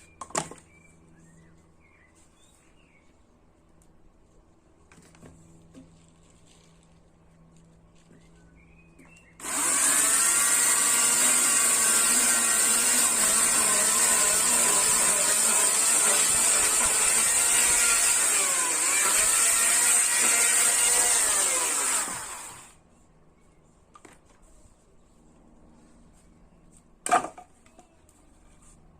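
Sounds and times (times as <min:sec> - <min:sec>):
chainsaw cutting wood: 0:09.4 - 0:22.8.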